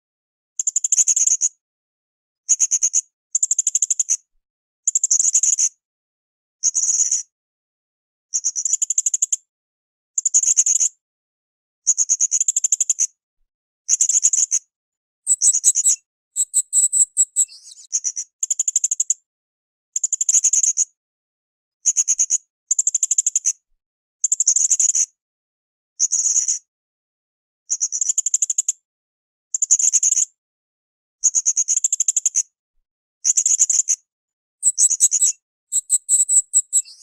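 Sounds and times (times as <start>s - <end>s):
parrot buzzing trills: 34.6s - 36.9s.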